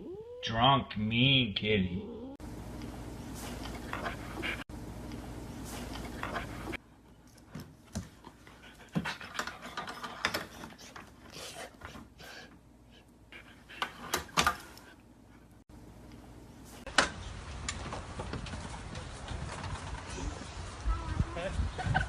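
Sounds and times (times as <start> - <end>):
dog panting: 3.5 - 4.7, 8.1 - 14.2.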